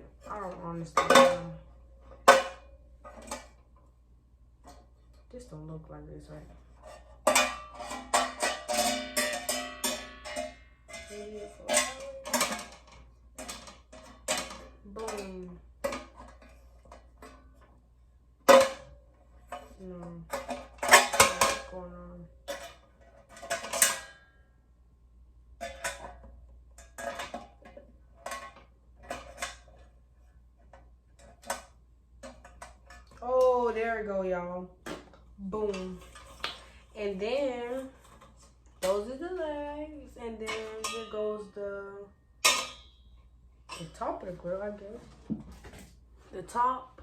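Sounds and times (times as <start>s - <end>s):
metal grill parts clanking: 42.4s - 43.0s.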